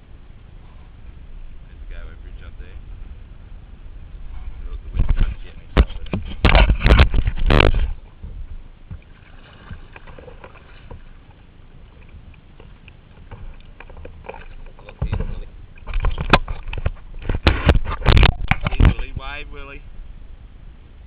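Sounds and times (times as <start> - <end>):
wind buffeting microphone: 0.0 - 21.0
paddle splashes: 4.9 - 19.4.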